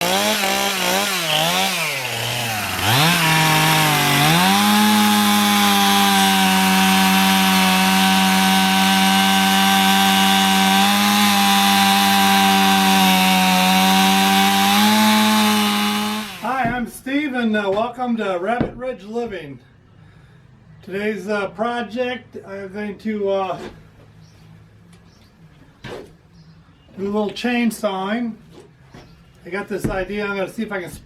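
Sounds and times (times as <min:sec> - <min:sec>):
chainsaw engine revving: 0:00.0 - 0:16.6.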